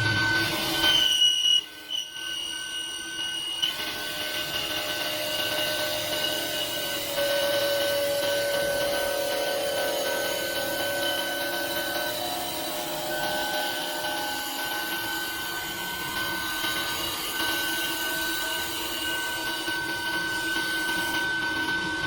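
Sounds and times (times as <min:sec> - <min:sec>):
wood lathe running: 0:00.0 - 0:22.0.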